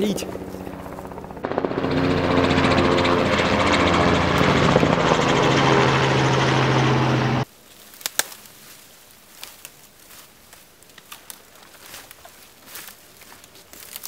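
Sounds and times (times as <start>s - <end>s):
helicopter rotor chop: 0.0s - 7.5s
low engine hum: 0.0s - 7.5s.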